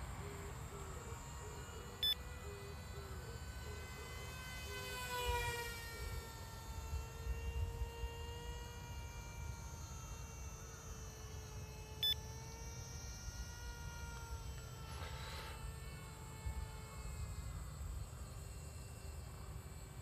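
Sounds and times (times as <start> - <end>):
rc plane motor whining: 0.0 - 20.0.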